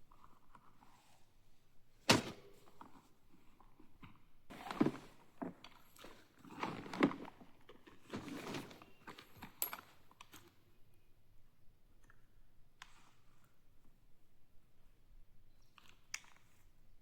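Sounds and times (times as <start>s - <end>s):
rustles of small objects: 4.5s - 9.8s.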